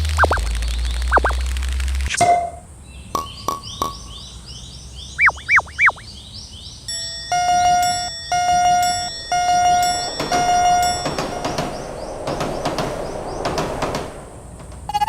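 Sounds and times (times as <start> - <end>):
high rising chirps: 2.2 - 15.0
whistle swoops: 5.2 - 6.1, 6.9 - 14.1
crossing warning signal tone: 6.9 - 14.2.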